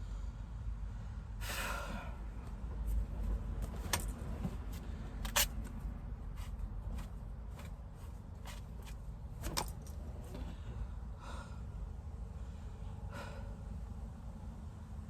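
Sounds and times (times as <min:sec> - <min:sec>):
strained breaths: 0:00.0 - 0:02.7, 0:10.3 - 0:13.7
steady low rumble: 0:00.0 - 0:15.0.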